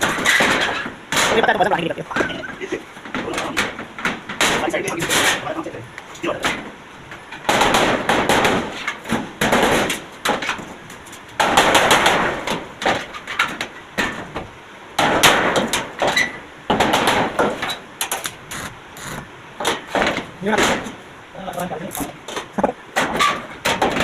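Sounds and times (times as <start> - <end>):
sharp metallic knocks: 0.0 - 1.5, 6.3 - 10.6
crackling metalwork noise: 0.0 - 24.0.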